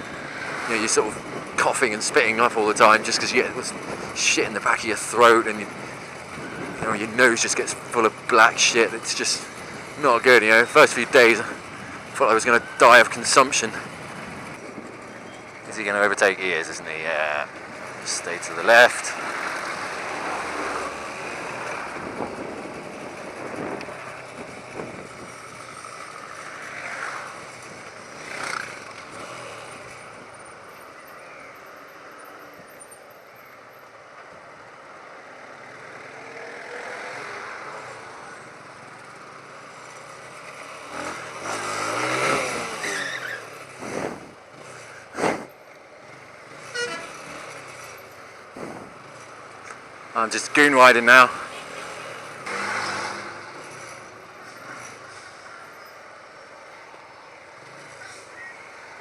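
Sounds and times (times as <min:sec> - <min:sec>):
wind and road noise: 0:00.0 - 0:59.0
vehicle horns tooting: 0:46.6 - 0:47.4.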